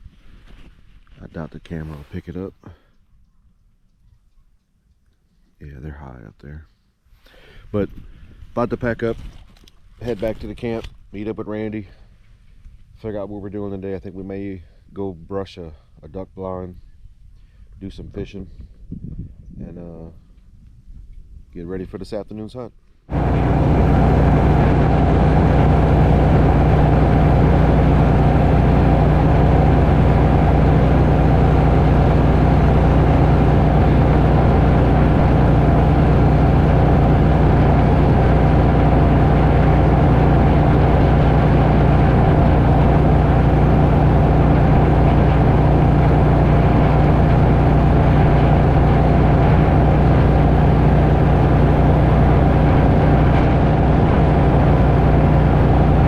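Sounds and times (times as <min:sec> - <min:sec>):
engine running steadily: 0:23.1 - 0:56.0.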